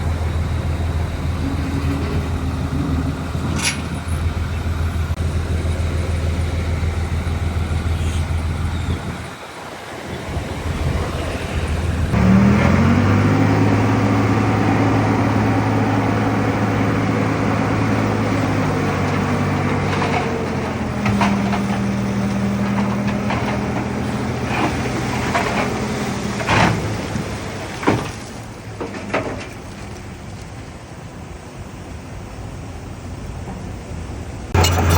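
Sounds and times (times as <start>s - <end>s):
heavy diesel engine revving: 0.0s - 9.3s, 10.2s - 27.7s, 34.5s - 34.9s
sharp metal clanks: 34.6s - 34.9s.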